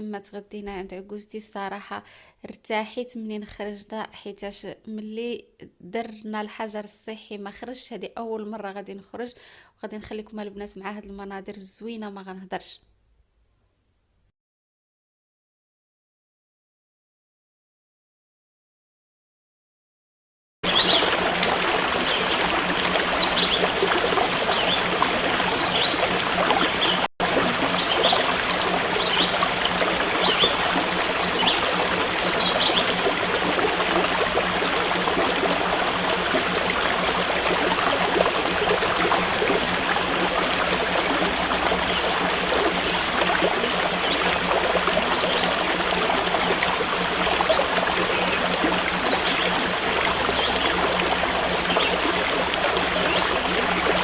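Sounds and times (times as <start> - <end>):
stream water rushing: 20.6 - 54.0.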